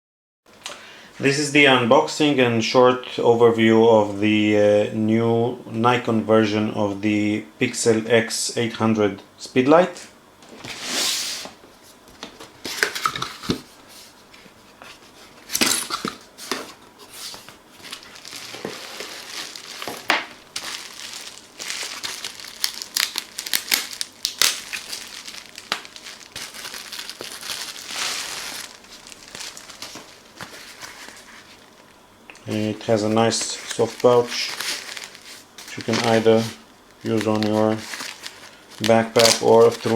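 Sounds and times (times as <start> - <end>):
packaging crinkling and rustling: 14.9 - 39.9.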